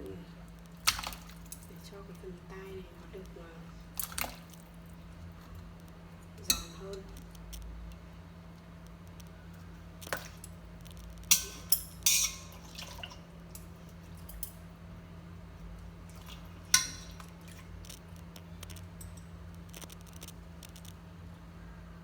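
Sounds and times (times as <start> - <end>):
water dripping: 0.6 - 8.0, 8.8 - 14.7, 15.8 - 20.8
utensil clinking against metal: 11.3 - 14.7.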